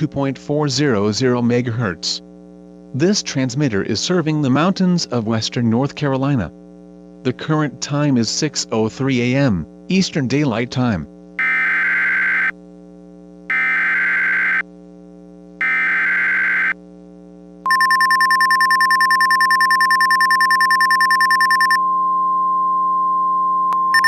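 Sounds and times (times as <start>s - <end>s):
steady low hum: 0.0s - 24.0s
rapid high pulsing beep: 11.4s - 12.5s, 13.5s - 14.6s, 15.6s - 16.8s, 17.7s - 21.8s
screechy digital data bursts: 11.4s - 12.5s, 13.5s - 14.6s, 15.6s - 16.8s, 17.7s - 21.8s
steady warning tone: 11.4s - 12.5s, 13.5s - 14.6s, 15.6s - 16.8s, 17.7s - 24.0s.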